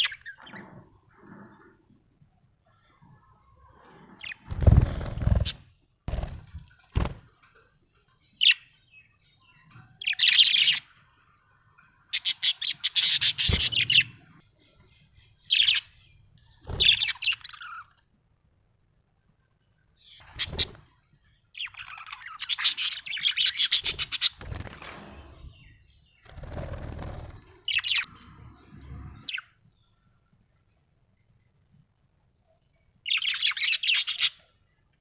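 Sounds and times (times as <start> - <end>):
budgerigar chirping and chattering: 12.2 - 14.2.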